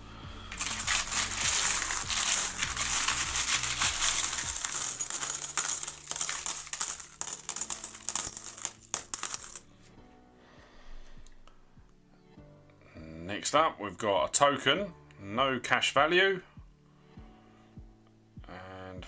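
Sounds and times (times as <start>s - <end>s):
coins clinking and jingling: 0.5s - 9.6s.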